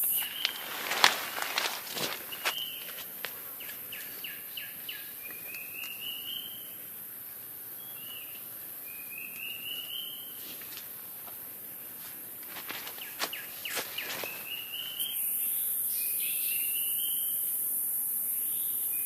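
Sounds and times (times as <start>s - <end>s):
bird calling: 0.0s - 3.0s, 13.0s - 17.3s
steady high hiss: 0.0s - 19.0s.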